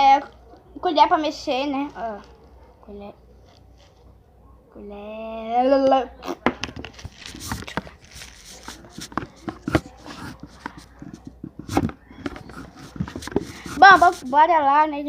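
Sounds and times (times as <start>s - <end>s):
soft rustling: 6.8s - 14.6s.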